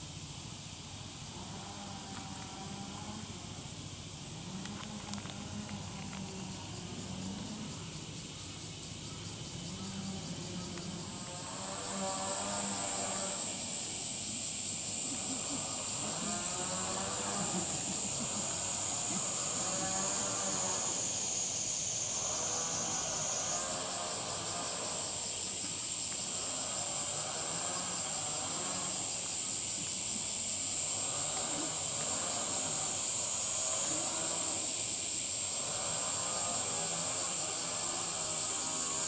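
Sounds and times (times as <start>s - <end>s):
high-pitched insect buzzing: 8.9s - 39.0s.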